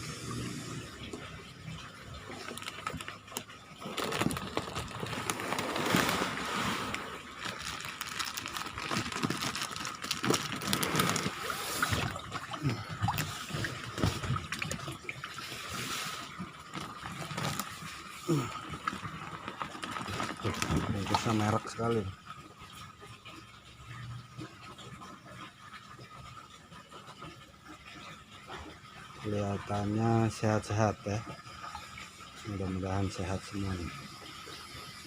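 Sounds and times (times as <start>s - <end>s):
water sloshing in plastic bags: 1.8s - 22.1s
plastic bag crackling and clicks: 2.5s - 6.4s, 7.4s - 11.4s.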